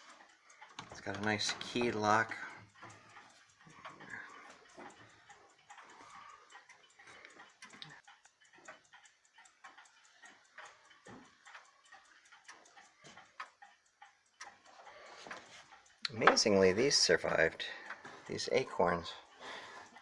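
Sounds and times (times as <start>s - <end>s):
pendulum clock ticking: 0.0s - 20.0s.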